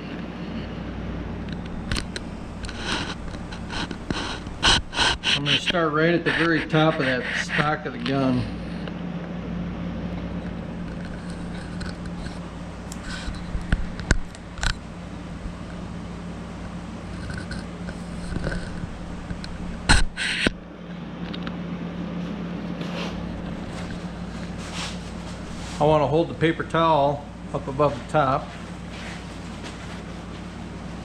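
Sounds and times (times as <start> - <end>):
steady low hum: 0.0 - 31.0
tape clicks and scrapes: 1.4 - 8.1, 10.4 - 14.8, 17.1 - 20.6.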